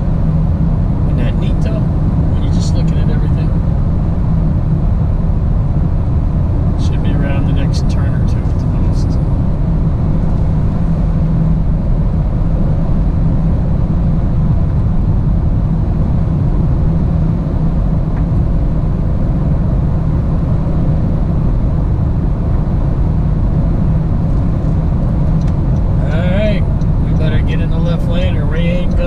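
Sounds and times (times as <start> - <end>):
vehicle engine and road noise: 0.0 - 29.0.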